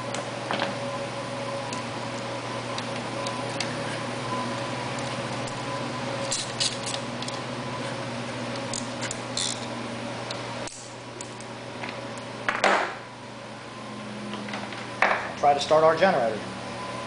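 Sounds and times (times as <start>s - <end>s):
steady hum: 0.0s - 17.0s
parts clicking and rattling: 6.2s - 7.4s, 8.6s - 9.7s.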